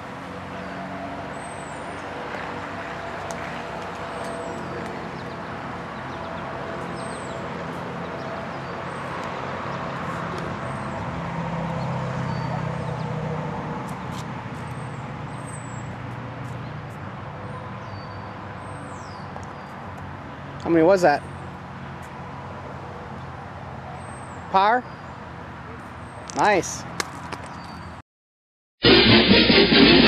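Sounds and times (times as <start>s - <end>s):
motor vehicle rumble: 0.0s - 20.7s.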